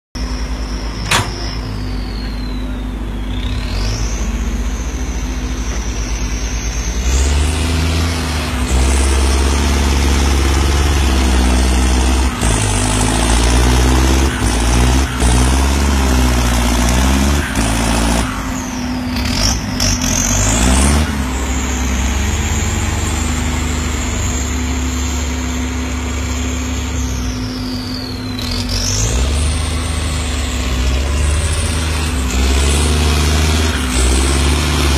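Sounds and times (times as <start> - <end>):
diesel engine under heavy load: 0.1 - 34.9
turbo whistle: 0.2 - 7.4.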